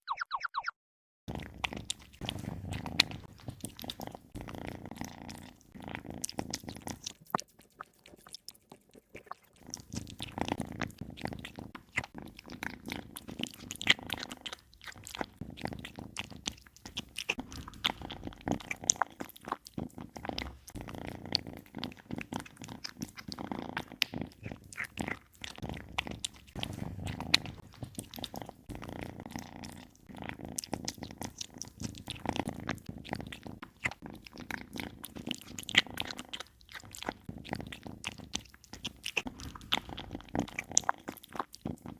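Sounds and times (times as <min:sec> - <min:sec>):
kittens crunching food: 0:01.3 - 0:41.9.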